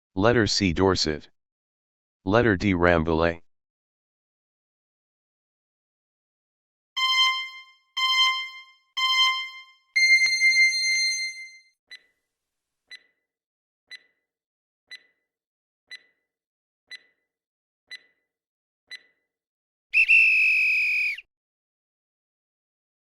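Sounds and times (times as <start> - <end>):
timer ticking: 7.0 - 10.6, 12.9 - 13.2, 13.9 - 14.2, 14.9 - 15.3, 15.9 - 16.3, 16.9 - 17.3, 17.9 - 18.3, 18.9 - 19.2
chime ringing: 7.0 - 11.6
electronic alarm tone: 7.0 - 11.7.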